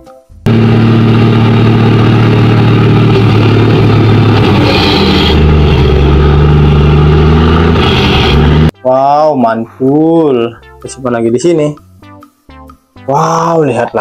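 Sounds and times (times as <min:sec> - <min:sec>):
truck engine running: 0:00.5 - 0:08.7.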